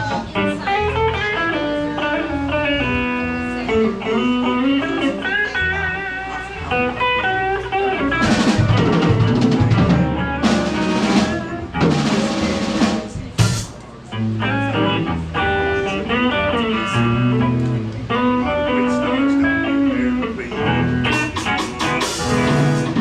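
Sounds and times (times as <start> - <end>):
blues band playing: 0.0 - 23.0
electric guitar lead lines: 0.0 - 23.0
drum kit with cymbal crashes: 8.1 - 14.1, 21.0 - 23.0.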